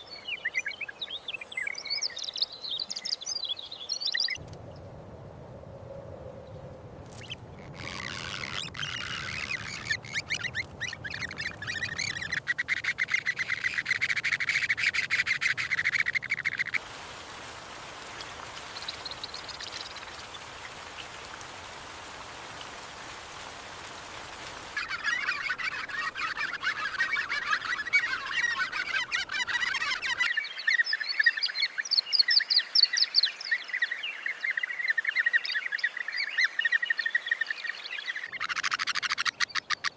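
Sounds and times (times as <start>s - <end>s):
steady hiss: 6.8s - 25.6s
chattering animal calls: 7.2s - 16.8s, 24.8s - 30.3s, 38.3s - 39.9s.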